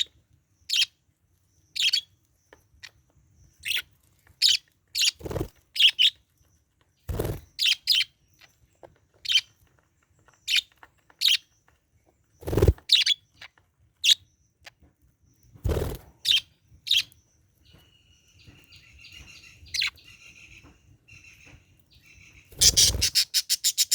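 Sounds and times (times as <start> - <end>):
budgerigar chirping: 22.3 - 23.9
budgerigar chattering warble: 22.6 - 23.9.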